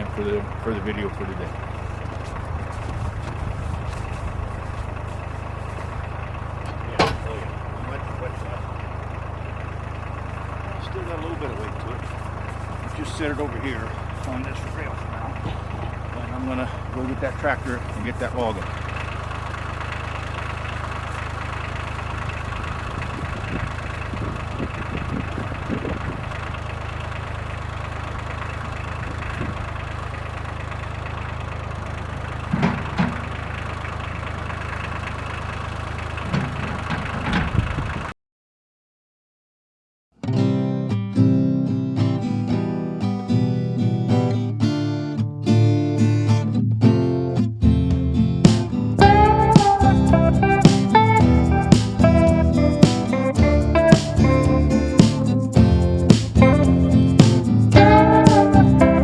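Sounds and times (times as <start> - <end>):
engine knocks: 0.0 - 38.1, 47.7 - 59.0
tractor engine idling: 0.0 - 38.1, 47.8 - 59.0
guitar music: 40.2 - 59.0.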